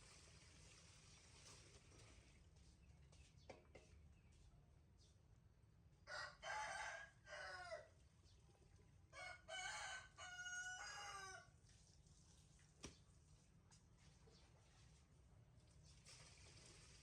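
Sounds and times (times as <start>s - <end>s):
rooster crowing: 6.1s - 7.9s, 9.1s - 11.5s.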